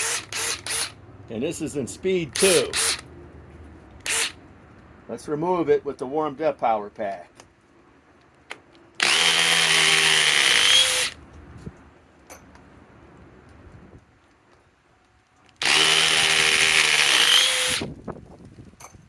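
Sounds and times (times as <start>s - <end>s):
impact driver whine: 0.0s - 1.0s, 2.3s - 3.1s, 4.0s - 4.4s, 9.0s - 11.2s, 15.6s - 17.9s.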